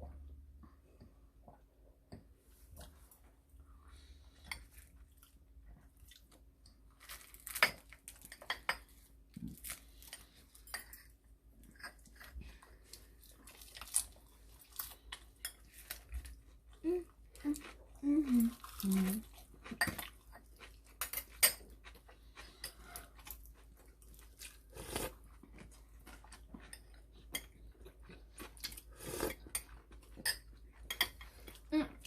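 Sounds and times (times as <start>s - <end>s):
chewing: 9.4s - 32.0s.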